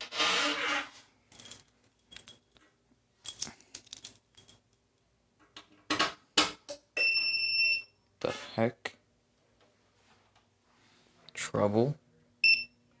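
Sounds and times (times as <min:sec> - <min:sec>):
metal hardware clicking and clinking: 0:01.3 - 0:02.7, 0:03.3 - 0:05.0.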